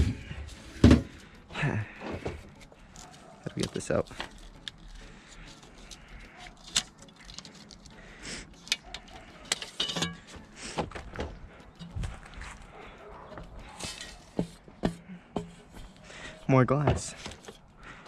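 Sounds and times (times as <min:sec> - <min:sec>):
junk clinking and rattling: 0:08.6 - 0:14.4.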